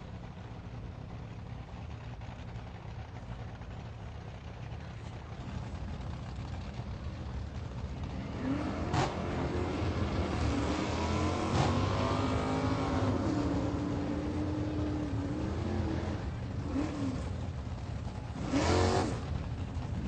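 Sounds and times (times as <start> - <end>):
sports car engine revving: 8.3 - 17.4, 18.0 - 20.0.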